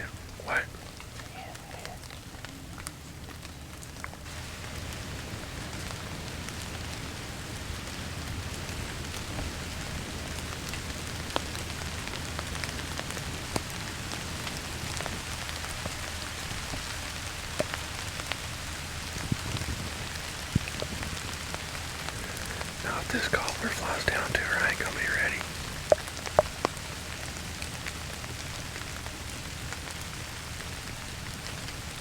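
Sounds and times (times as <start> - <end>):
steady rain falling: 0.0 - 32.0
single raindrops striking close: 8.0 - 30.2.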